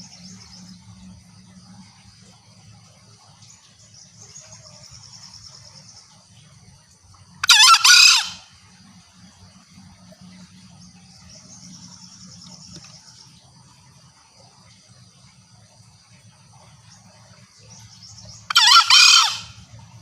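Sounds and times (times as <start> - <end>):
junglefowl crowing: 7.4 - 8.5, 18.5 - 19.6.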